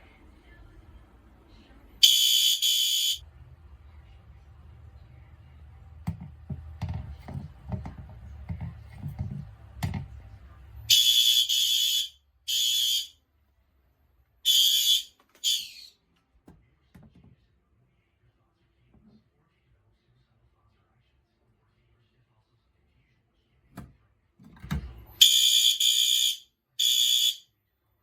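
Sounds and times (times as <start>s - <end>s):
fire alarm horn blasts: 2.0s - 3.2s, 10.9s - 13.2s, 14.4s - 15.8s, 25.2s - 27.5s.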